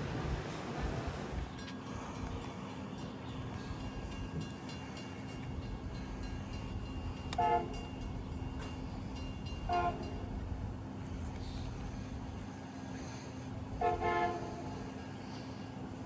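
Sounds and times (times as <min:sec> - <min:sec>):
train horn toots: 0:07.3 - 0:07.9, 0:09.7 - 0:10.3, 0:13.8 - 0:15.0.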